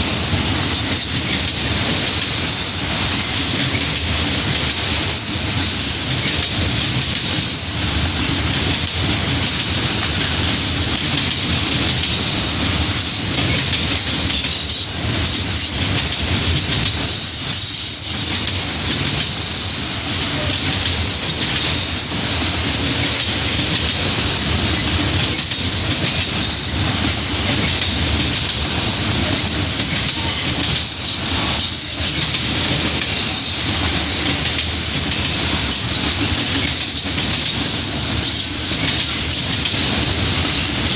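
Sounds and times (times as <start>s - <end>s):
train wheels rumbling on rail: 0.0s - 40.9s
high-pitched wheel squeal: 17.2s - 18.2s.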